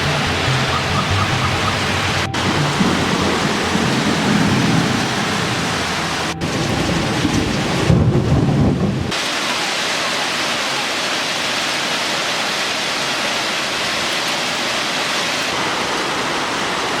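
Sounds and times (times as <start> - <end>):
low thunder rumble: 0.0 - 9.1
heavy rain pouring: 0.0 - 17.0.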